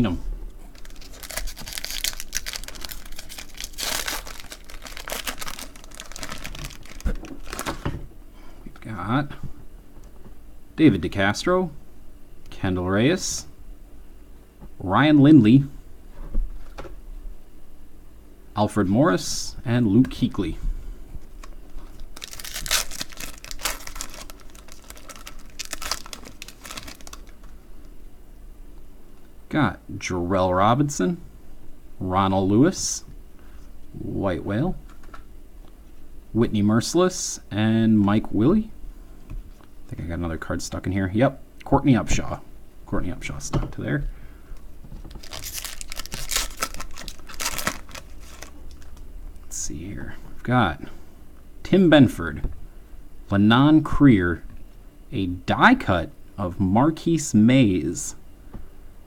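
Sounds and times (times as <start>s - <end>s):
plastic wrapper crinkling and tearing: 0.7s - 7.8s, 21.3s - 27.5s, 45.1s - 49.0s.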